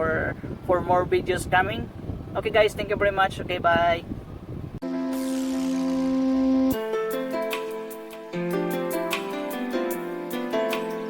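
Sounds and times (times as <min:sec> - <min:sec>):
soft instrumental chords: 0:04.8 - 0:11.0.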